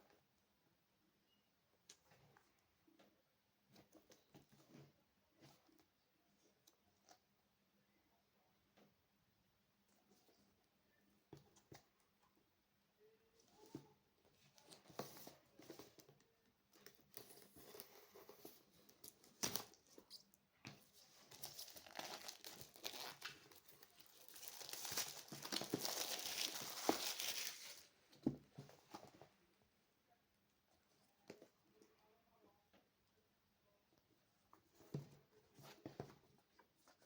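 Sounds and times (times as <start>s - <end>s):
packaging crinkling and tearing: 21.3s - 27.9s.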